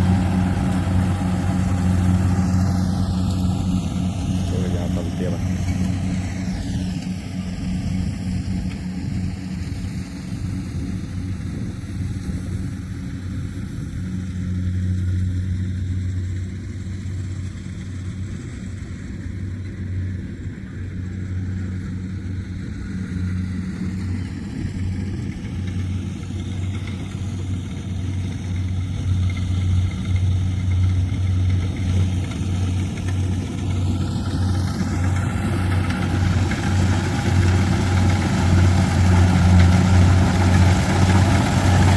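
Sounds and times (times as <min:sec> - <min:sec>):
combine harvester diesel engine hum: 0:00.0 - 0:41.9.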